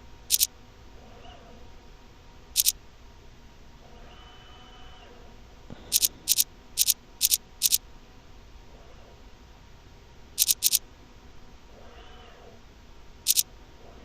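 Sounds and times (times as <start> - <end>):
short high-pitched chirps: 5.9 - 7.8, 10.4 - 10.8.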